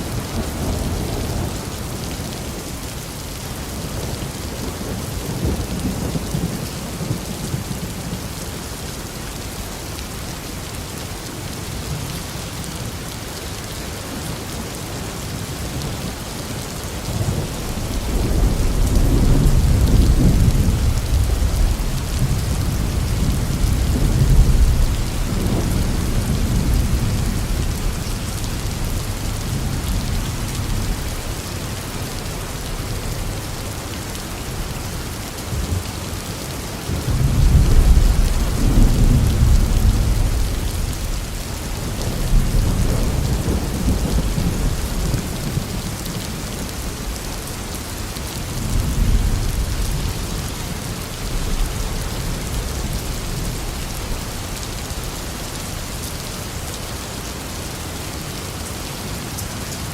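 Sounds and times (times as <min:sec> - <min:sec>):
heavy rain: 0:00.0 - 0:59.9
rolling thunder: 0:17.1 - 0:31.3, 0:36.9 - 0:46.3.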